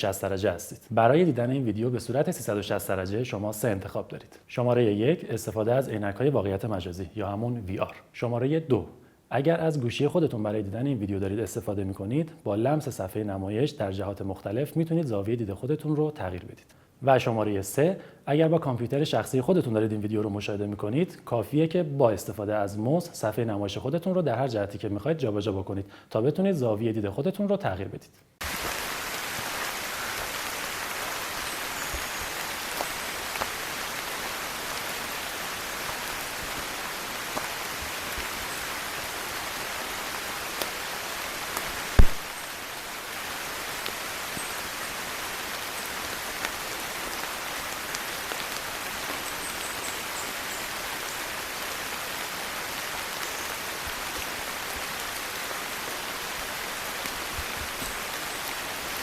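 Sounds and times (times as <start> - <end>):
steady rainfall: 28.4 - 59.0
sharp knock: 42.0 - 42.3.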